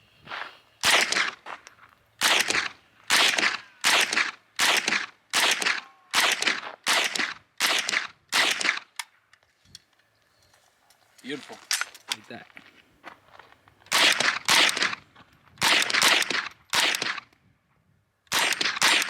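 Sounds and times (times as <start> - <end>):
rifle shots with echo: 0.8 - 1.4, 2.2 - 8.9, 13.9 - 15.0, 15.6 - 17.3, 18.3 - 19.0.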